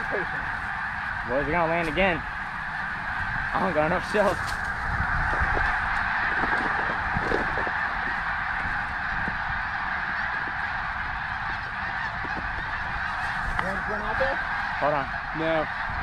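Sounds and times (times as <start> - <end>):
flock of geese calling: 0.0 - 16.0.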